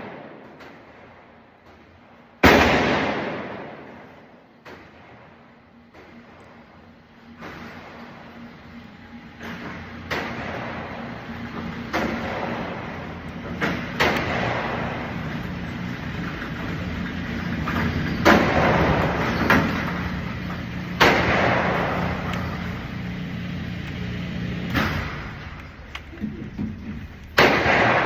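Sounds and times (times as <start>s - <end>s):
gunshots with echo: 0.0s - 0.6s, 2.4s - 4.4s, 21.0s - 22.2s, 27.4s - 28.0s
steady low hum: 0.0s - 28.0s.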